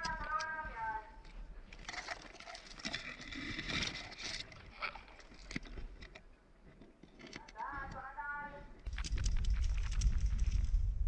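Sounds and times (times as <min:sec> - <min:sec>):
sharp clicks and crackles: 0:08.8 - 0:10.9.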